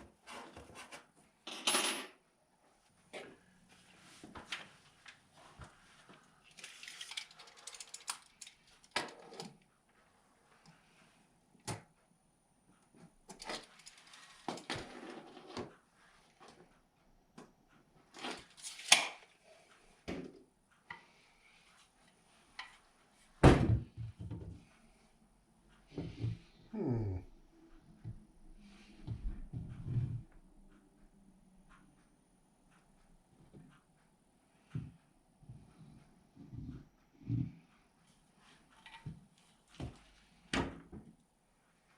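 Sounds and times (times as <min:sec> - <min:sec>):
tools and parts clattering: 0:01.5 - 0:02.2, 0:06.5 - 0:09.6, 0:18.2 - 0:19.2.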